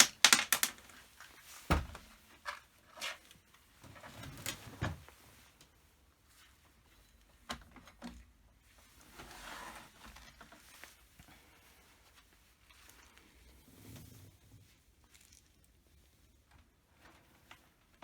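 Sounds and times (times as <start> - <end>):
soft rustling: 1.0 - 7.5, 8.5 - 18.0.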